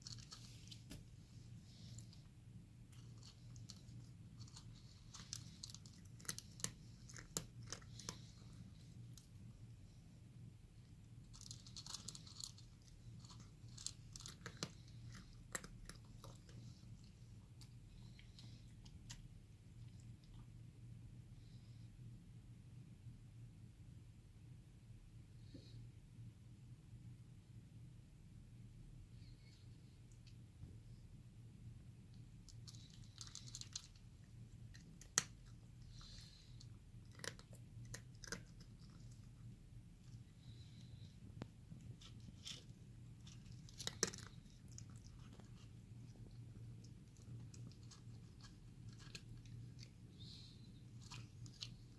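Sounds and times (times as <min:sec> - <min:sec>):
low steady hum: 0:00.0 - 0:51.9
cat crunching food: 0:02.9 - 0:09.3, 0:11.2 - 0:20.5, 0:32.4 - 0:51.9.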